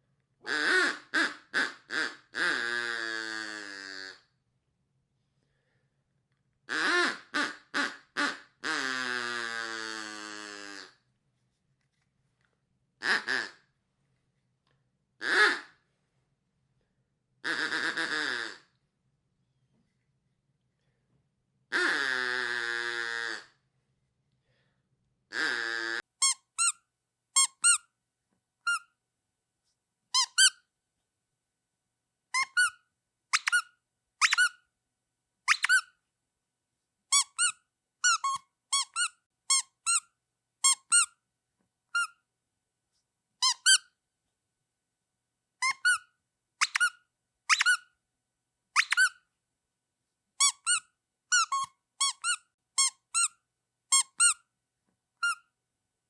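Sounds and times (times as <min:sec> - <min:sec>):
rubber duck toy squeaking: 0:00.5 - 0:04.2, 0:06.7 - 0:11.0, 0:13.0 - 0:13.6, 0:15.2 - 0:15.7, 0:17.4 - 0:18.7, 0:21.7 - 0:23.5, 0:25.3 - 0:26.8, 0:27.4 - 0:27.9, 0:28.7 - 0:29.0, 0:30.1 - 0:30.6, 0:32.3 - 0:34.7, 0:35.5 - 0:36.0, 0:37.1 - 0:41.2, 0:41.9 - 0:42.2, 0:43.4 - 0:44.0, 0:45.6 - 0:48.0, 0:48.8 - 0:49.3, 0:50.4 - 0:54.5, 0:55.2 - 0:55.5.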